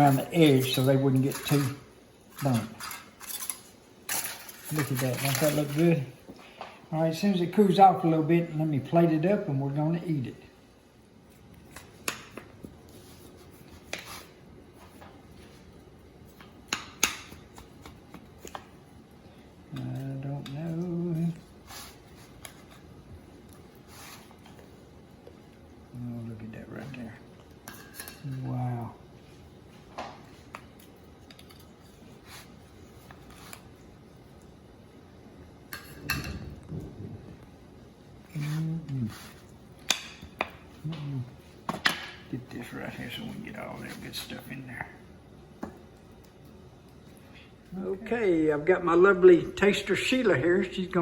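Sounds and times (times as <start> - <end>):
utensils and dishes clinking: 0.0 - 6.0.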